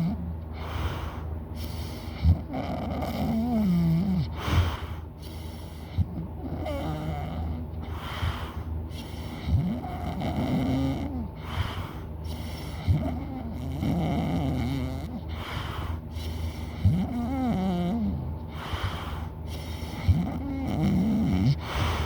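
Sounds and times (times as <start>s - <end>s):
person snoring loudly: 6.4s - 7.6s, 9.5s - 11.7s, 12.9s - 15.2s, 20.0s - 22.0s.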